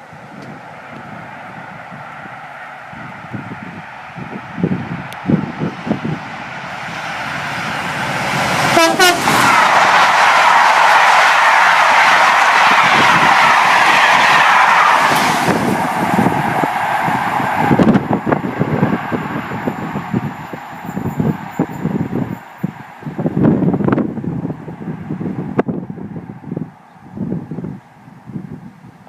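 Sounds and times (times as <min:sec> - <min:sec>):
train passing at speed: 0:00.0 - 0:28.7
train horn toot: 0:08.6 - 0:09.6.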